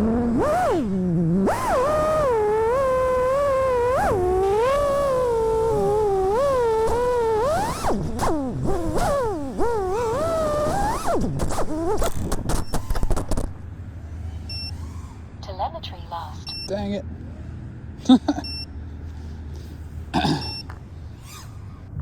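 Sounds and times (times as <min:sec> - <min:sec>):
quadcopter motors whining: 0:00.0 - 0:15.4, 0:20.6 - 0:22.0.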